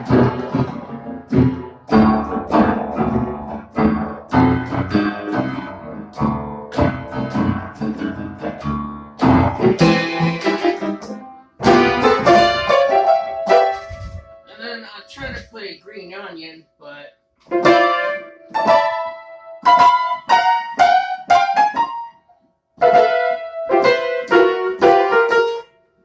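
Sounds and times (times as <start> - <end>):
electronic keyboard playing: 0.0 - 15.6.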